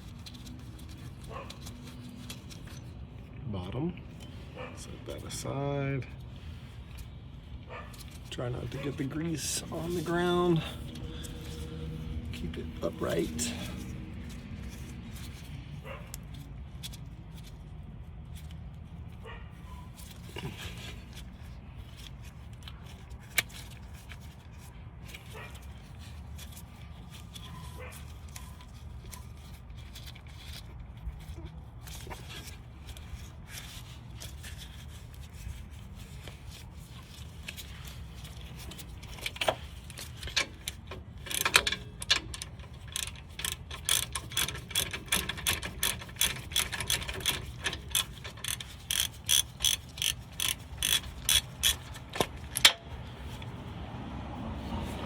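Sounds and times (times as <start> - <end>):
ratchet wrench clicking: 38.7 - 53.0.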